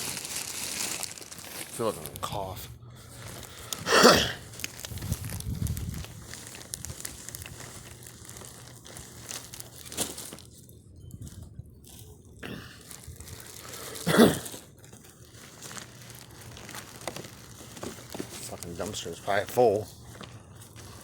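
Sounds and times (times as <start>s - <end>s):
plastic bag crinkling: 0.0s - 21.0s.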